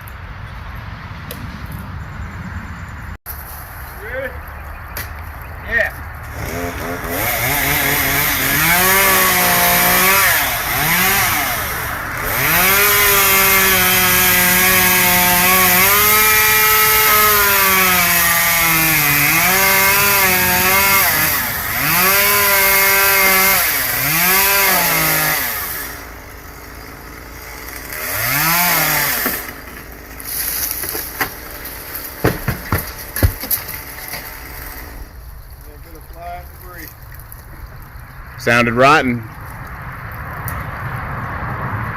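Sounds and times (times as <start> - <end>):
chainsaw cutting wood: 6.2 - 35.2
sharp knocks: 32.2 - 33.7.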